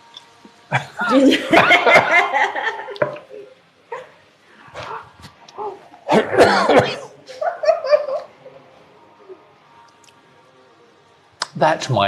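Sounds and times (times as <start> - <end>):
man coughing and spluttering: 6.1 - 7.2.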